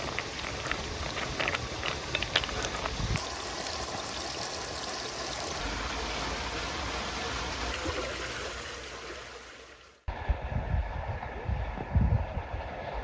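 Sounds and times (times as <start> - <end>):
stream flowing: 0.0 - 10.2.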